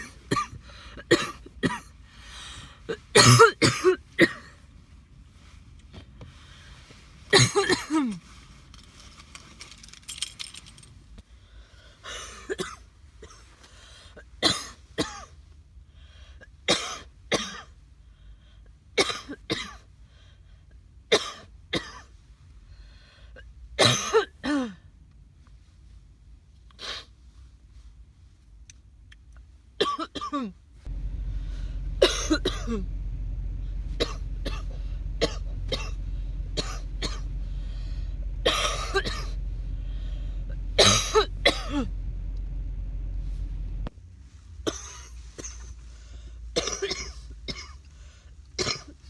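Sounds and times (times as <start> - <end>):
woman coughing: 0.0 - 1.9, 2.9 - 4.5, 7.3 - 8.2, 12.1 - 13.4, 14.4 - 15.2, 19.0 - 19.8, 29.8 - 30.6, 32.0 - 32.9, 34.0 - 37.4, 38.4 - 39.4, 40.8 - 42.0, 46.6 - 47.7.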